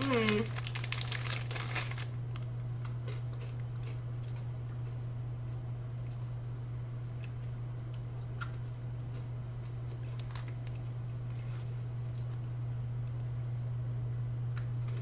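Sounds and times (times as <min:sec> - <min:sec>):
steady low hum: 0:00.0 - 0:15.0
person chewing a cracker: 0:02.8 - 0:05.0, 0:07.1 - 0:12.5.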